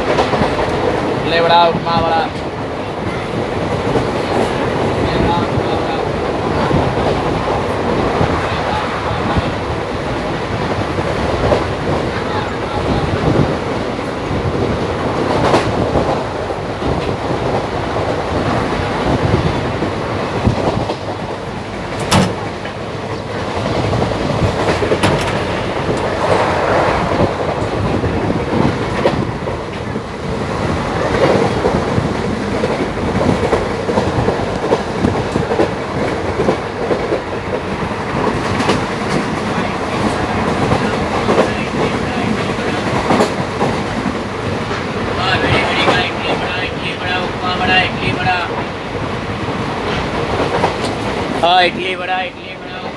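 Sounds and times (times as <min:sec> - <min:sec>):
train rumbling: 0:00.0 - 0:52.9
wheels clacking over rail joints: 0:14.4 - 0:51.8
sharp knocks: 0:21.9 - 0:22.8, 0:24.6 - 0:26.1.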